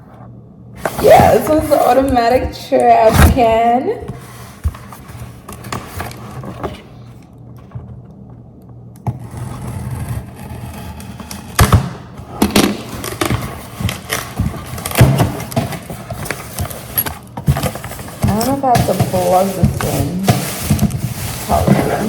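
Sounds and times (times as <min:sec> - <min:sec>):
scraping and knocking of trash can: 0:00.8 - 0:06.9, 0:11.6 - 0:22.0.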